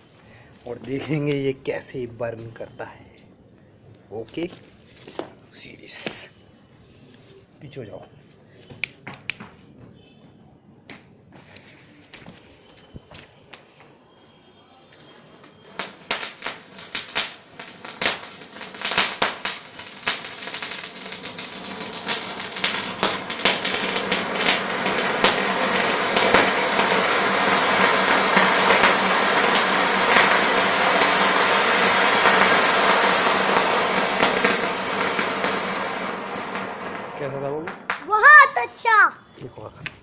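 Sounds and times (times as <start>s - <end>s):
firework crackling and hissing: 0.0s - 2.1s, 4.2s - 6.3s, 15.0s - 40.0s.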